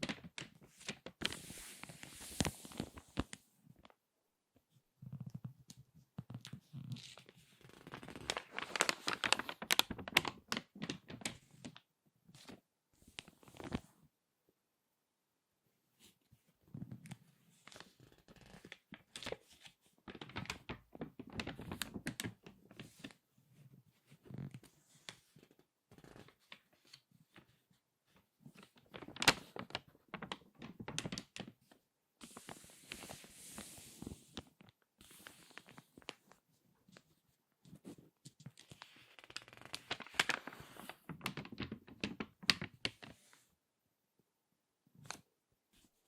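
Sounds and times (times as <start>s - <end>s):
magazine pages crinkling: 0.0s - 3.4s, 6.2s - 11.8s, 17.6s - 23.2s, 28.6s - 31.6s, 38.4s - 43.2s.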